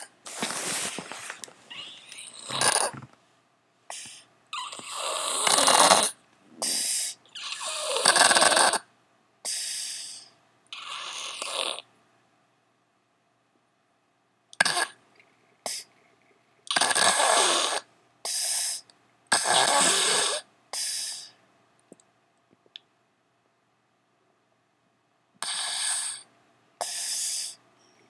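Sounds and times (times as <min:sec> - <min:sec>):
loud snoring: 0:02.2 - 0:03.1, 0:04.6 - 0:08.9, 0:10.8 - 0:11.9, 0:16.7 - 0:17.9, 0:19.3 - 0:20.4
short snorts: 0:03.9 - 0:08.8, 0:15.6 - 0:15.9, 0:16.7 - 0:21.4, 0:25.4 - 0:27.6.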